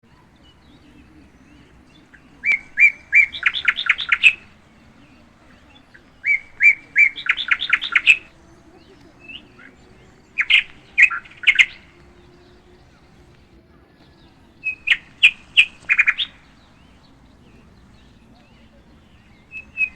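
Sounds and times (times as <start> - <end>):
songbird singing: 0.0 - 19.9.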